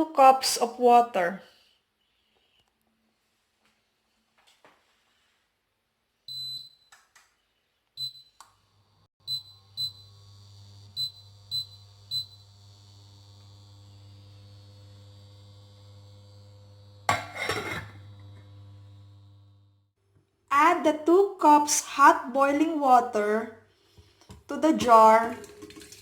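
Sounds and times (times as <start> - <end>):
appliance button beeps: 6.3 - 7.0, 9.3 - 10.1, 11.0 - 12.4
appliance electrical hum: 8.0 - 19.9.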